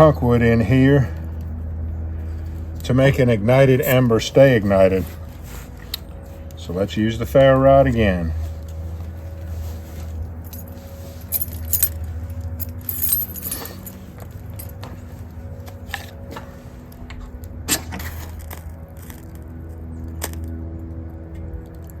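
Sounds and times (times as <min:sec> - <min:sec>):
low hum: 0:00.0 - 0:22.0.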